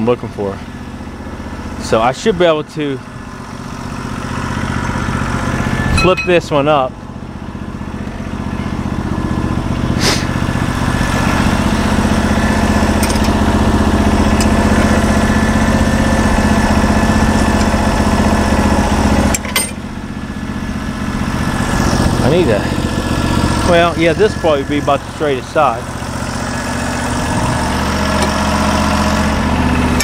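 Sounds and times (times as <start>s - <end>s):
gasoline engine idling: 0.0s - 30.0s.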